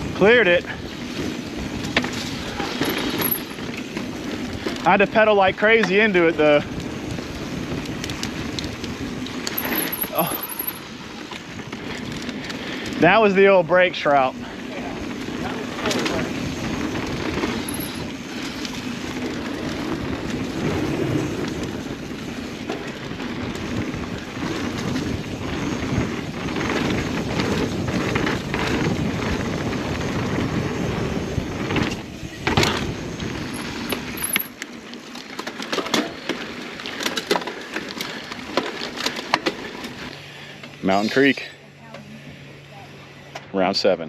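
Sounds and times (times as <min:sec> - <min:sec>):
bike drivetrain rattle: 0:00.0 - 0:41.5
bike tyre roar on dirt: 0:00.0 - 0:44.0
light bike clicks: 0:05.7 - 0:13.1
wind rush: 0:14.4 - 0:34.2.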